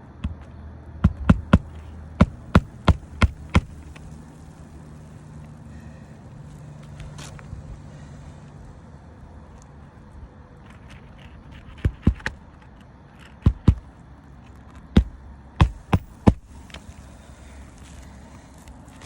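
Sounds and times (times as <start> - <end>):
footsteps on a roof: 0.1 - 4.0, 10.7 - 17.0.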